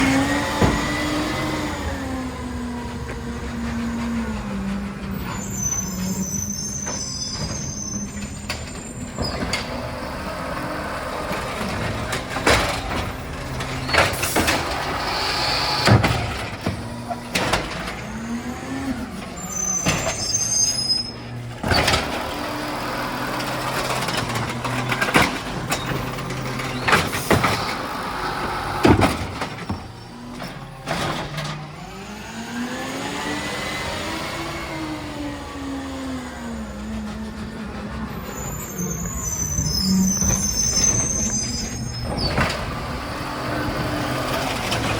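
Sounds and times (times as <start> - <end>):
garbage truck engine: 0.0 - 44.9
high squeal: 5.1 - 10.8, 19.0 - 21.4, 33.5 - 44.9.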